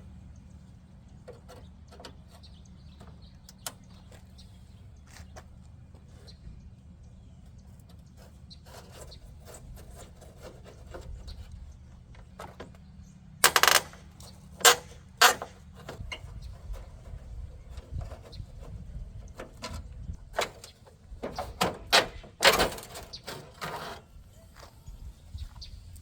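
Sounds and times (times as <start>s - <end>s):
small metal clicks and scrapes: 7.5s - 12.8s, 13.4s - 24.1s
loud metal rattling clatter: 13.4s - 18.7s, 20.4s - 24.0s.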